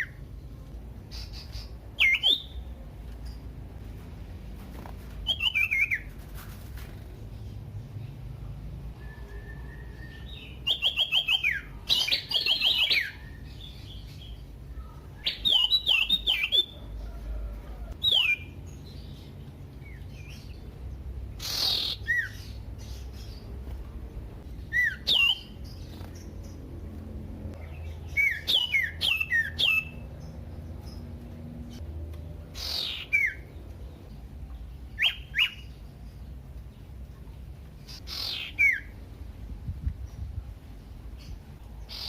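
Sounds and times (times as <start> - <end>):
bird whistling song: 1.1 - 2.7, 5.2 - 6.1, 9.0 - 14.4, 15.2 - 16.8, 18.0 - 18.6, 21.4 - 23.4, 24.6 - 25.7, 28.0 - 30.0, 32.6 - 33.5, 34.9 - 35.7, 37.9 - 39.0.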